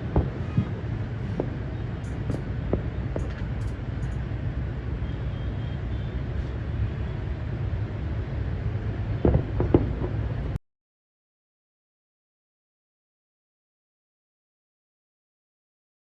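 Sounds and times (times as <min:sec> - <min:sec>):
fireworks bangs: 0:00.0 - 0:04.3, 0:09.1 - 0:10.6
distant fireworks rumble: 0:00.0 - 0:10.6.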